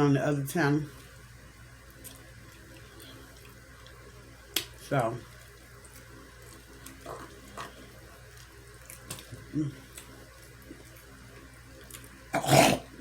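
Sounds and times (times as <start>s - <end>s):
steady low hum: 0.0s - 13.0s
person chewing and smacking: 1.9s - 4.8s, 5.8s - 11.1s, 11.8s - 12.8s
person humming: 9.5s - 9.8s.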